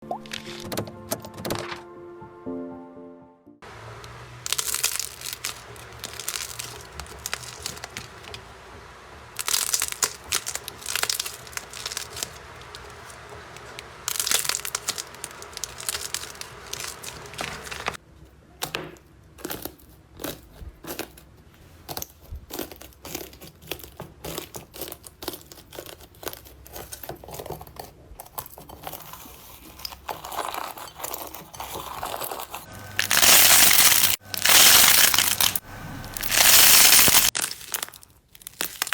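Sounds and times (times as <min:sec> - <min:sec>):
slime crackling and tearing: 0:04.4 - 0:08.4, 0:09.4 - 0:18.0, 0:21.9 - 0:28.5, 0:29.1 - 0:38.9.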